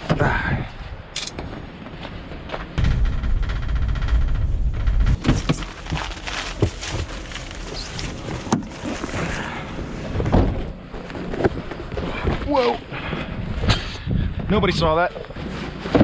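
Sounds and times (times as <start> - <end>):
vehicle engine rumbling: 2.7 - 13.6
knocks and thuds: 2.8 - 7.5.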